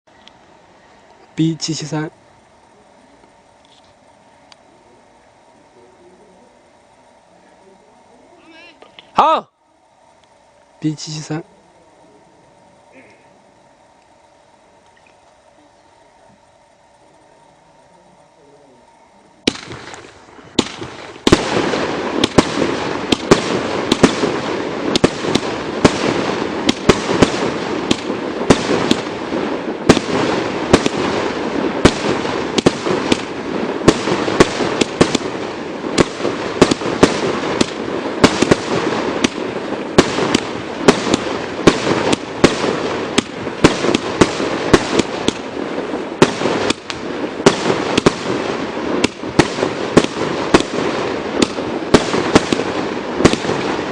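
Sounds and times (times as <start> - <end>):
crackling hiss: 0.0 - 53.9
firework cake reports: 0.8 - 14.8.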